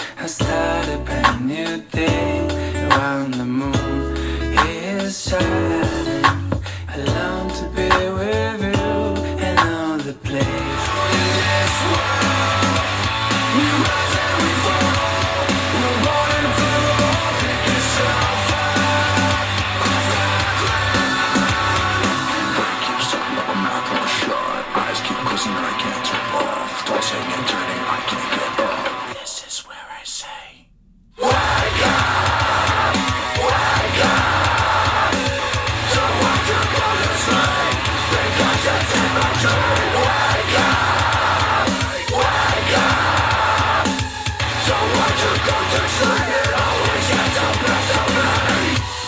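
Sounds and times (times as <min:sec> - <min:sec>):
song through portable speaker: 0:00.0 - 0:49.0
instrumental music with guitar: 0:10.4 - 0:24.3.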